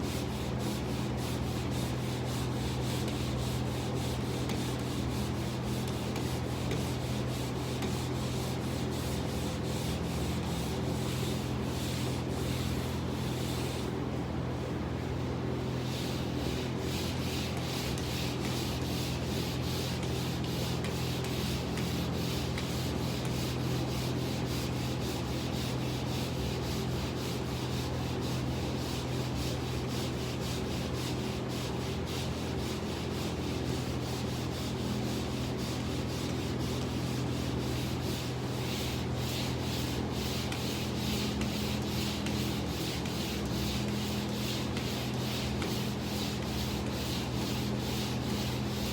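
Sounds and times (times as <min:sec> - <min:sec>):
sandpaper scraping drywall: 0:00.1 - 0:14.0, 0:15.8 - 0:48.9.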